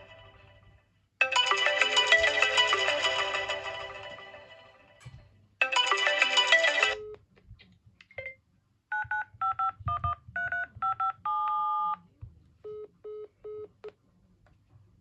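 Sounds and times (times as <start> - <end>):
musical phone ringtone: 1.2 - 5.0, 5.6 - 7.1
touch-tone dialing beeps: 8.2 - 12.0.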